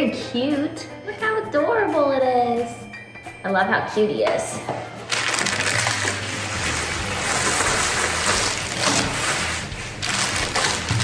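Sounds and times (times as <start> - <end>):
plastic packaging crinkling: 5.0 - 11.0.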